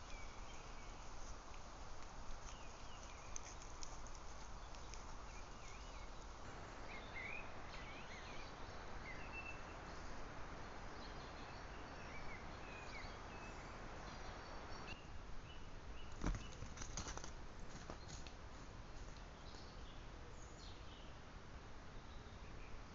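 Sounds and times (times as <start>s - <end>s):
wild birds chirping and whistling: 0.0s - 1.4s, 2.3s - 16.6s
microphone hiss: 0.0s - 22.9s.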